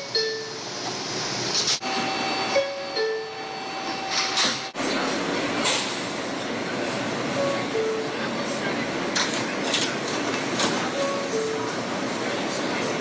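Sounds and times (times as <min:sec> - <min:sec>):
subway car running noise: 0:00.0 - 0:13.0
two-tone door chime: 0:01.9 - 0:04.7.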